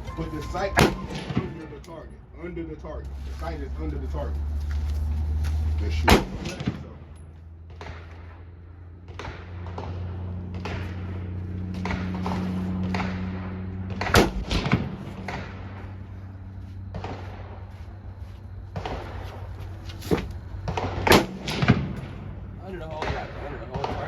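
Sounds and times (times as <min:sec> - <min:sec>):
steady low hum: 0:00.0 - 0:24.0
gunshots: 0:00.6 - 0:01.8, 0:05.9 - 0:07.0, 0:09.0 - 0:15.8, 0:20.6 - 0:22.3.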